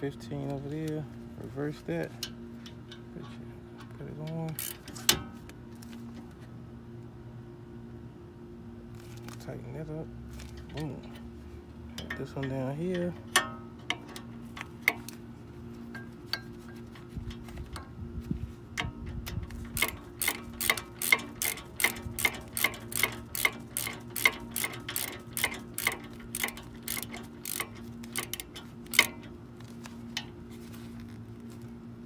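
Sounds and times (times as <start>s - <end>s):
ratchet wrench clicking: 4.5s - 5.2s, 19.2s - 29.3s.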